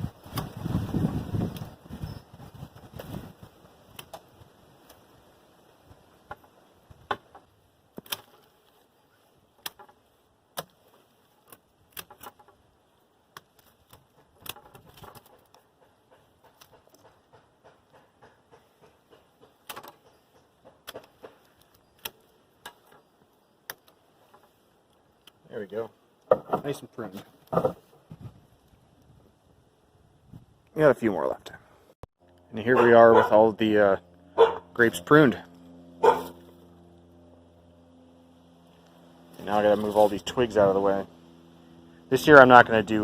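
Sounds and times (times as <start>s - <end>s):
pruning shears snipping: 3.8s - 5.1s, 7.1s - 8.9s, 9.5s - 12.6s, 13.2s - 25.4s.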